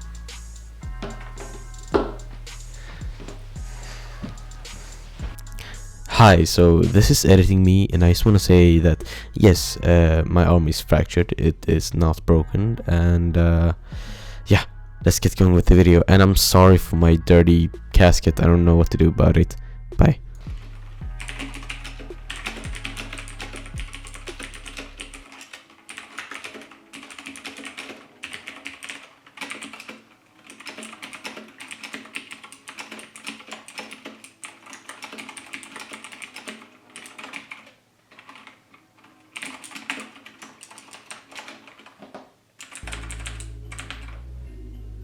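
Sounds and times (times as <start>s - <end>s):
mechanical keyboard typing: 21.2s - 44.2s.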